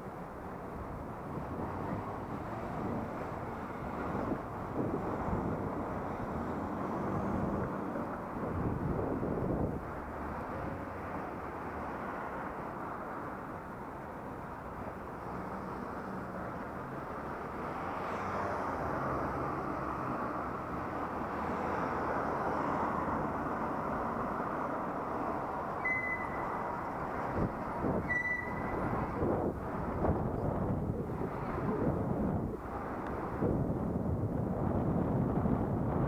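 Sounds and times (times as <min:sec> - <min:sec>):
road noise: 0:00.0 - 0:36.0
wind rush on microphone: 0:00.0 - 0:36.0
short high beeps: 0:25.8 - 0:26.6, 0:28.1 - 0:28.8.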